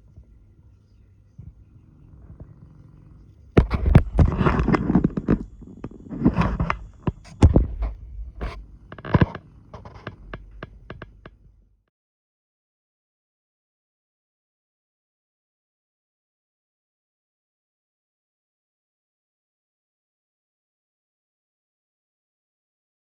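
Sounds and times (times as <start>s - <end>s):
hand tools scraping plastic: 3.6s - 11.3s.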